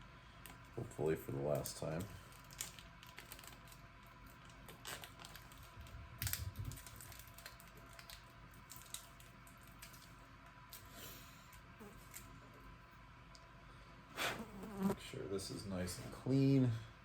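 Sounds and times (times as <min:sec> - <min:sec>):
tape crinkling and clicking: 0:00.4 - 0:10.9.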